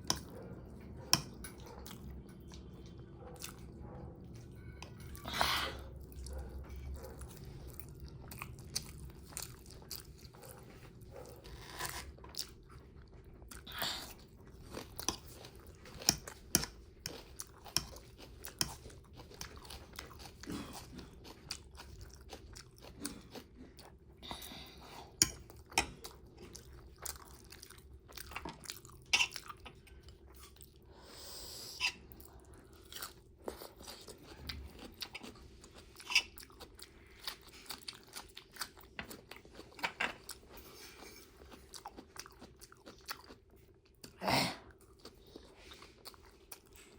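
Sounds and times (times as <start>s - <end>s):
crunchy chewing: 31.8s - 46.9s.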